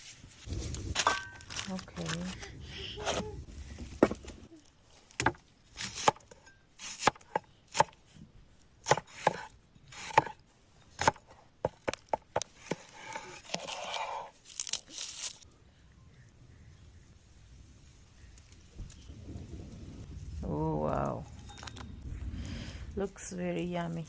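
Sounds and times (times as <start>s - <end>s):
knife scraping board: 8.9s - 10.4s, 12.6s - 14.3s.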